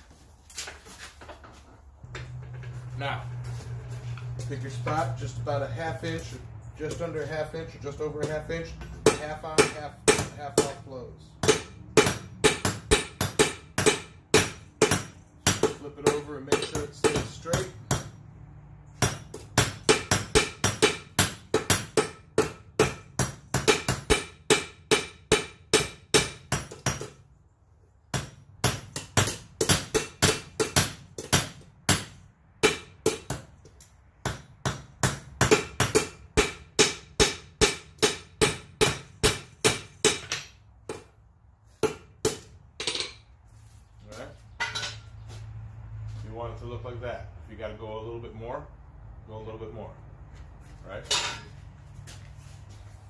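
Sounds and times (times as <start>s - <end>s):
hammer striking steel on anvil: 8.2s - 10.8s, 11.4s - 18.2s, 19.0s - 27.2s, 28.1s - 33.5s, 34.2s - 41.1s, 41.8s - 43.3s, 51.1s - 51.6s.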